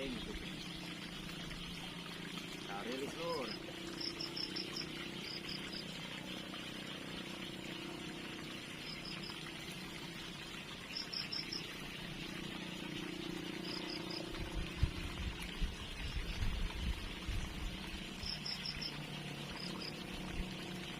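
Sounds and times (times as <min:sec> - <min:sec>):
outdoor insect hum: 0:00.0 - 0:20.9
insects chirping in trills: 0:03.1 - 0:05.9, 0:08.3 - 0:09.5, 0:10.8 - 0:12.1, 0:13.4 - 0:14.5, 0:17.8 - 0:20.2.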